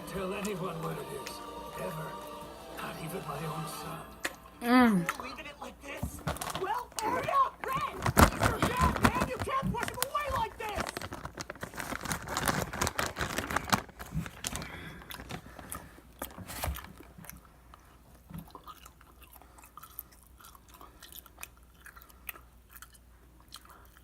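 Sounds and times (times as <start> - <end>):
person chewing food: 13.4 - 24.0.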